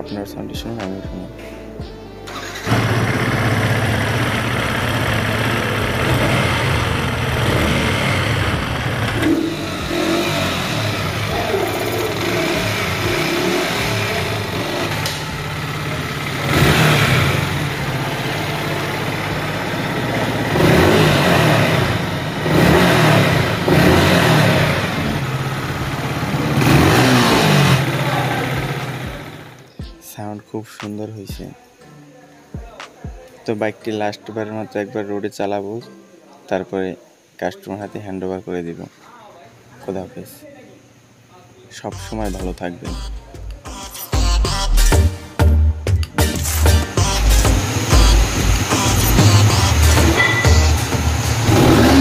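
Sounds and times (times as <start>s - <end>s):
motorcycle engine idling and revving: 2.3s - 29.7s, 46.9s - 52.0s.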